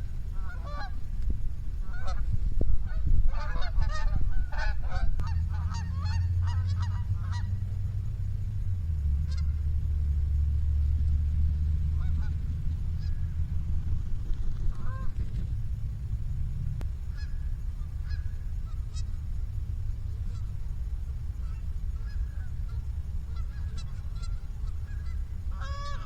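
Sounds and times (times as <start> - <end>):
geese honking: 0.0 - 1.1, 1.8 - 8.0, 9.1 - 9.9, 11.6 - 13.5, 14.6 - 15.3, 17.0 - 26.0
loud low steady hum: 0.0 - 26.0.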